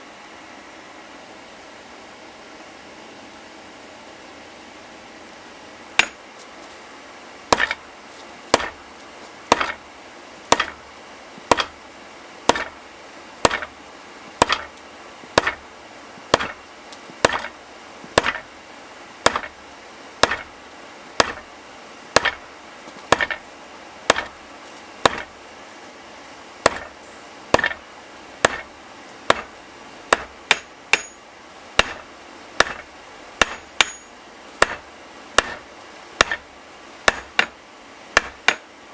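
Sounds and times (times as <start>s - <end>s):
hammer striking hot steel on anvil: 6.0s - 6.3s, 7.5s - 7.8s, 8.5s - 8.8s, 9.5s - 9.8s, 10.5s - 10.9s, 11.5s - 12.8s, 13.4s - 13.8s, 14.4s - 14.8s, 15.4s - 15.7s, 16.3s - 18.5s, 19.2s - 19.6s, 20.2s - 20.5s, 21.2s - 22.5s, 23.1s - 23.5s, 24.1s - 25.4s, 26.6s - 38.8s.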